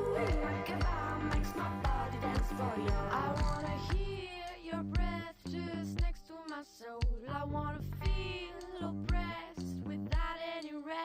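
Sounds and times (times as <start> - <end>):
kick drum beat: 0.0 - 5.3, 6.0 - 6.3, 7.0 - 7.3, 8.0 - 9.4, 10.1 - 10.6
woman singing pop song: 0.0 - 11.0.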